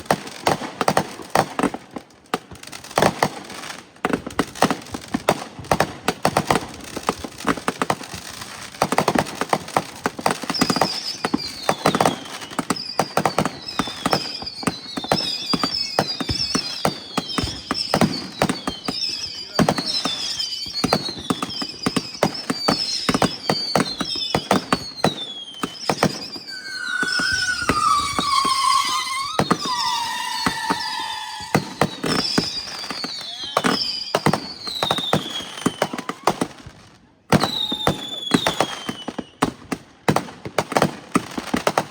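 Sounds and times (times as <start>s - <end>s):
fireworks cracking and popping: 0.0s - 41.9s
high falling whistles: 22.7s - 35.8s
lower falling whistle: 24.8s - 35.1s.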